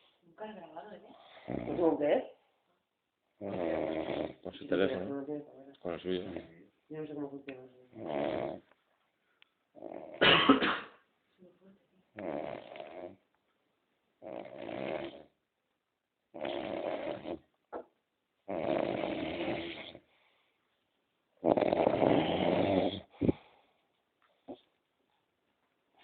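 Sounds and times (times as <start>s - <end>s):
short snort: 1.3s - 1.9s, 12.2s - 13.2s, 21.4s - 23.6s
loud snoring: 1.4s - 2.0s, 3.4s - 4.6s, 7.9s - 8.6s, 9.8s - 10.3s, 12.2s - 13.2s, 14.2s - 15.3s, 16.3s - 17.5s, 18.5s - 20.0s, 21.4s - 23.4s.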